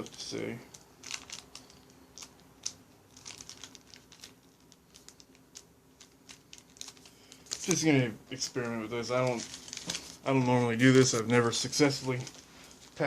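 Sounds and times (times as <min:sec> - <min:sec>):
foil packs crinkling: 0:00.0 - 0:13.0.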